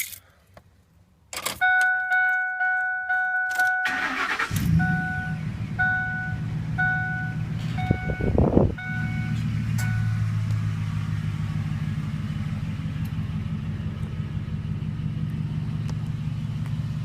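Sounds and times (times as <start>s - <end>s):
warning chime pinging: 1.6s - 10.4s
car engine idling: 3.8s - 17.0s.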